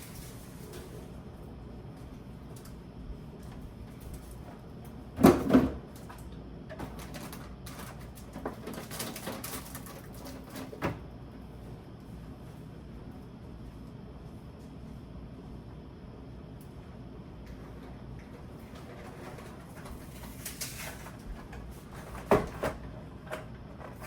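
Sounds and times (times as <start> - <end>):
groceries and plastic containers clunking: 5.1 - 11.0, 18.6 - 24.0.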